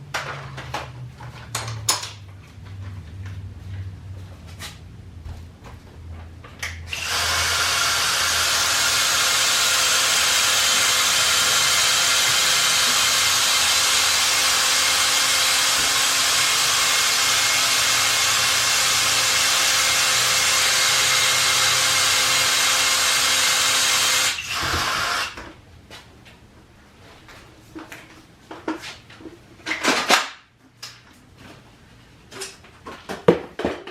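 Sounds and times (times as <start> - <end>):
electric motor running under load: 6.9 - 25.3.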